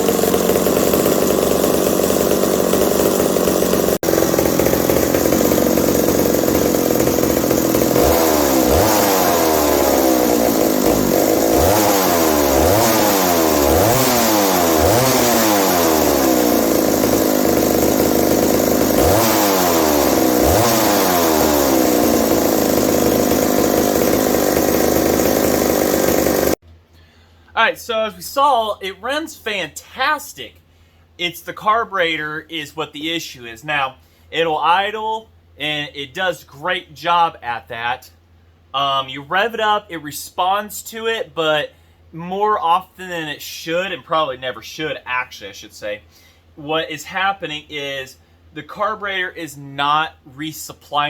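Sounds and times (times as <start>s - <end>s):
chainsaw engine revving: 0.0s - 26.6s.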